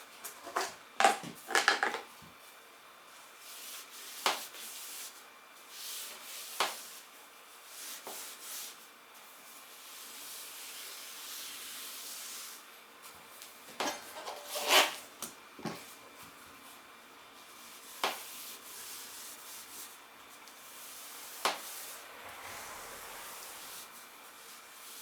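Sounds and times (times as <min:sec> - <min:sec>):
rubbing and scraping on tyre: 0:14.0 - 0:15.2, 0:17.5 - 0:25.0.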